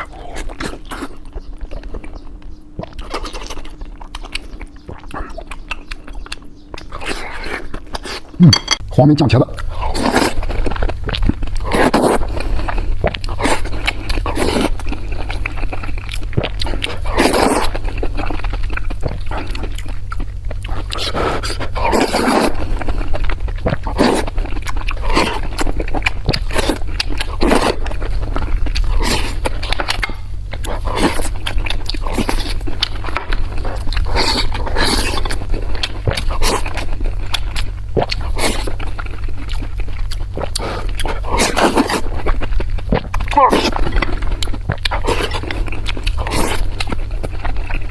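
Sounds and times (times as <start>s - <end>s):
wet chewing and smacking: 0.0s - 8.4s, 9.5s - 47.9s.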